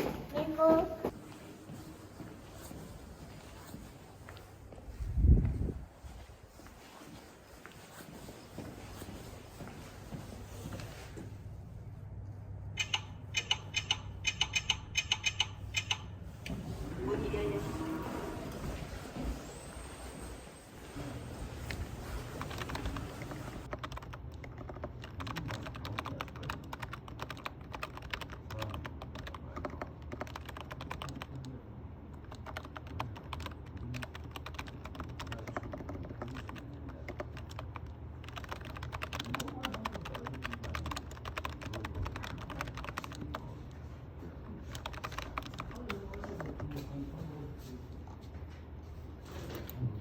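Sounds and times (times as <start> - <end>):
computer keyboard typing: 12.8 - 16.2, 22.2 - 31.5, 32.2 - 43.5, 44.7 - 46.8.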